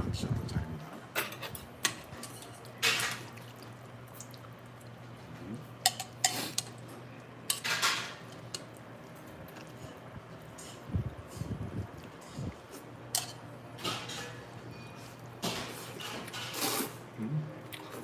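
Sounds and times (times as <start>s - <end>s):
utensils clinking against metal bowl: 1.1s - 3.4s, 5.8s - 6.8s, 7.5s - 8.8s, 9.5s - 10.9s, 13.1s - 17.0s.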